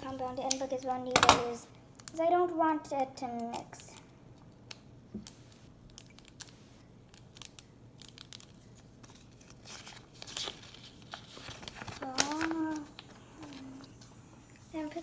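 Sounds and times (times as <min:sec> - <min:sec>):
toy packaging crinkling and tearing: 0:05.8 - 0:13.8.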